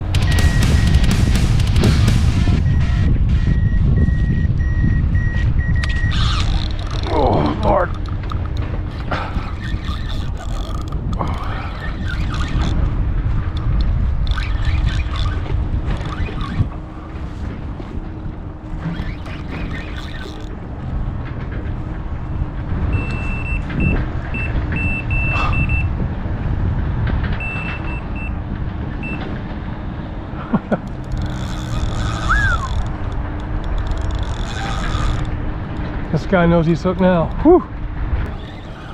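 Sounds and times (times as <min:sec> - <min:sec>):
low rumble: 0:00.0 - 0:38.8
bite alarm beeping: 0:00.1 - 0:01.4, 0:02.0 - 0:07.0, 0:22.9 - 0:25.9, 0:27.4 - 0:28.4, 0:29.0 - 0:29.3.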